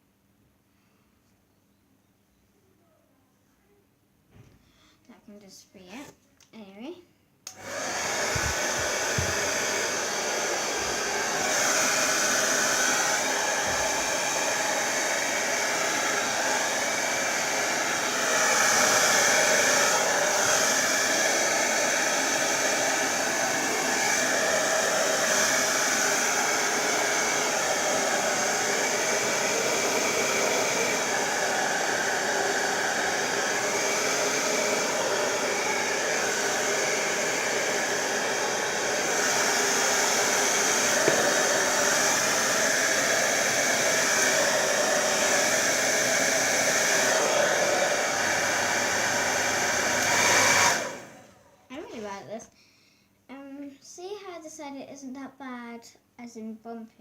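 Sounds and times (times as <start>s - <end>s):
hairdryer running: 7.5s - 51.6s.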